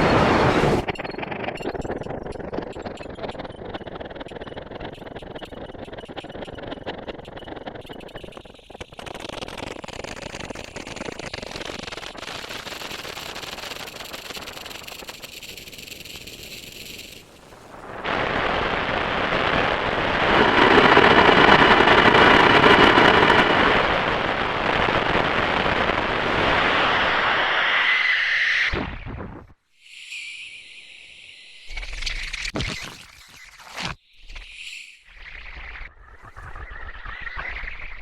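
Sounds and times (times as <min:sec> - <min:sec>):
grainy synthesizer noise texture: 0:11.2 - 0:38.0
faint held synth tones: 0:29.7 - 0:37.8.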